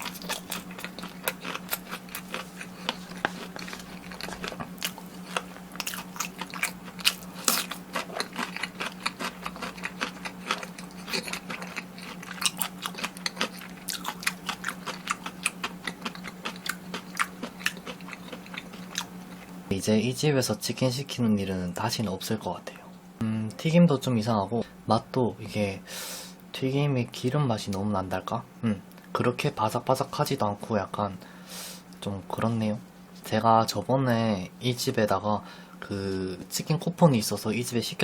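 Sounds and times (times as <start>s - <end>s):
crunching and chewing fried food: 0.0s - 19.7s
faint steady hum: 0.0s - 38.0s.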